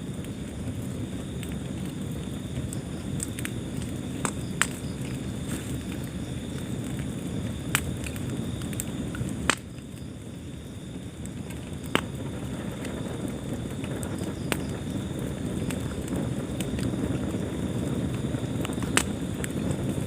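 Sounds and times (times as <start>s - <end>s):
wood fire crackling: 0.0s - 20.0s.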